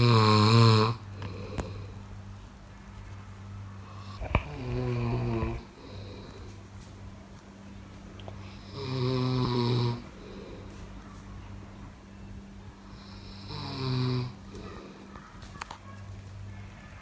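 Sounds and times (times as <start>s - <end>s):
person snoring loudly: 0.0s - 1.9s, 4.1s - 6.3s, 8.6s - 10.4s, 13.0s - 14.4s.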